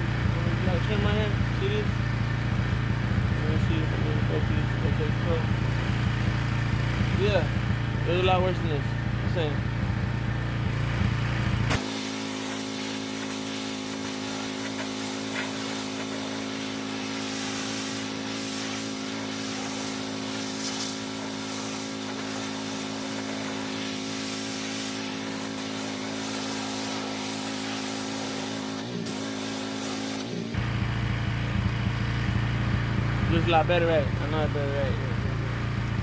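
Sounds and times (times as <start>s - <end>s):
pressure washer engine running: 0.0s - 36.0s
water spray hissing: 10.8s - 35.9s.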